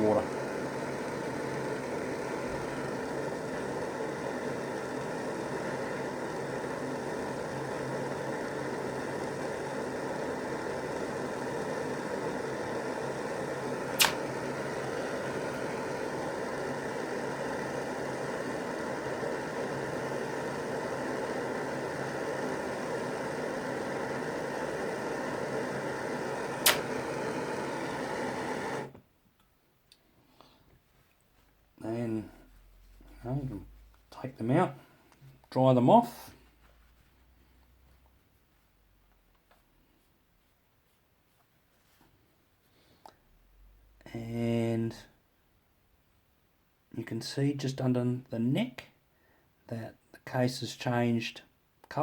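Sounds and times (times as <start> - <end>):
torch flame roaring: 0.0 - 28.9
sharp click: 13.9 - 14.2, 26.6 - 26.9.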